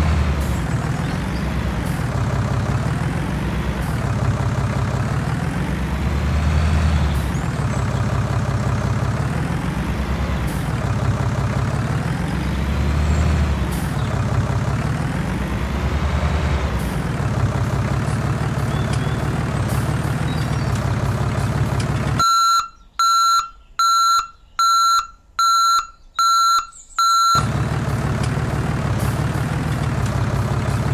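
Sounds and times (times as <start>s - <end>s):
heavy vehicle engine running: 0.0s - 22.3s, 27.3s - 30.9s
high reversing beeps: 22.2s - 27.5s.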